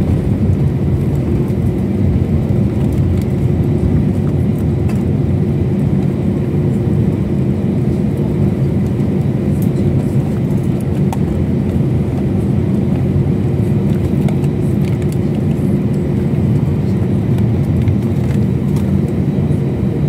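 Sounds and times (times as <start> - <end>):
airliner cabin drone: 0.0 - 20.0.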